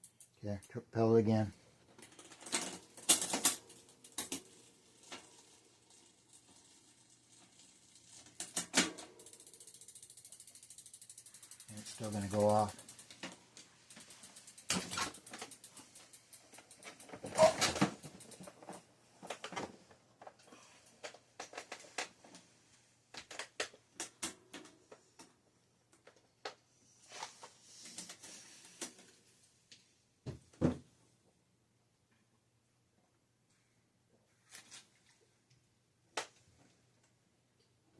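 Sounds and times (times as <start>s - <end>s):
tools clicking and knocking on bicycle: 0.0s - 0.8s, 1.9s - 22.5s, 23.1s - 26.6s.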